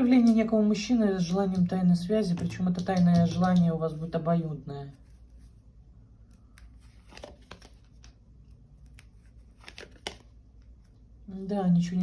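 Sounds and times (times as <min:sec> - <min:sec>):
low room hum: 0:00.0 - 0:12.0
cards rustling and tapping: 0:01.2 - 0:03.8, 0:06.3 - 0:11.0.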